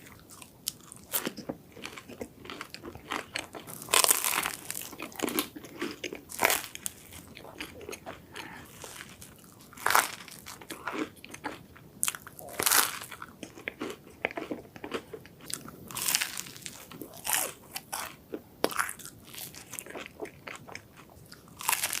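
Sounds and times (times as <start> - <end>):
quiet chewing: 0.0 - 22.0.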